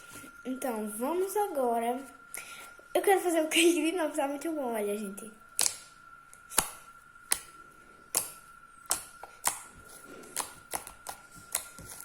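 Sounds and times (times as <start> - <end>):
slime clicking pops: 5.6 - 5.9.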